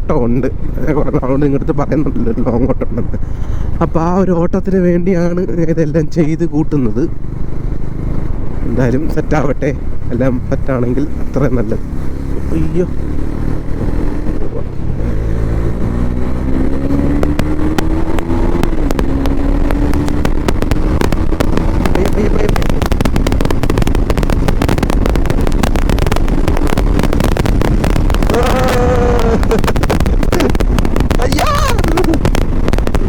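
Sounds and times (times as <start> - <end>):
motorcycle engine accelerating: 6.8 - 33.0
wind buffeting microphone: 7.1 - 33.0.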